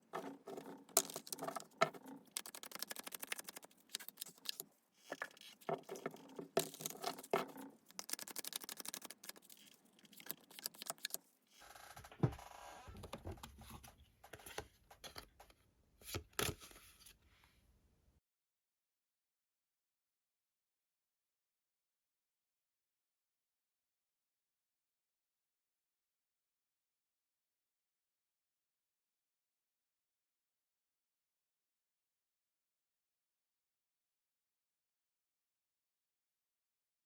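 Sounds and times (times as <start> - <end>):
cards being shuffled: 0.2 - 11.2.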